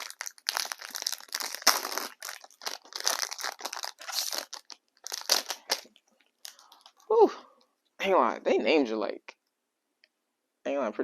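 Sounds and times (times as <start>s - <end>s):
card pack wrappers crinkling: 0.0s - 7.1s.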